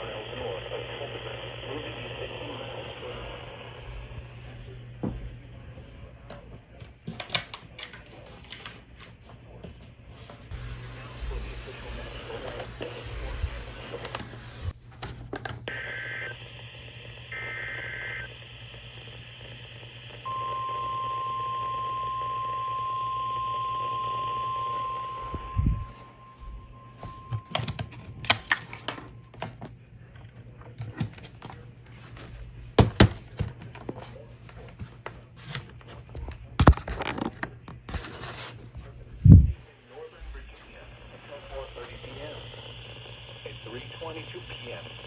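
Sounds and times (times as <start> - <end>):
radio static clicks and crackles: 0.0 - 8.7, 9.4 - 45.0
steady warning tone: 10.5 - 14.8, 15.7 - 29.5, 39.2 - 45.0.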